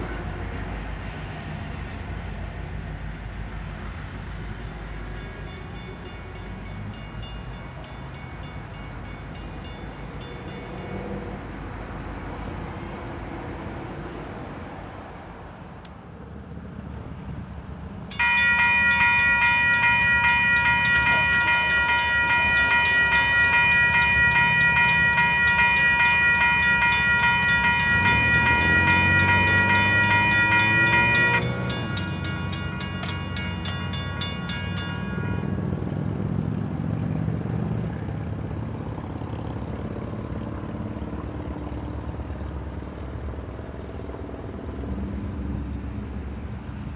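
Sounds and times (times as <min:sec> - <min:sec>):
passing train rumble: 0:00.0 - 0:46.9
locomotive air horn blast: 0:19.7 - 0:32.2.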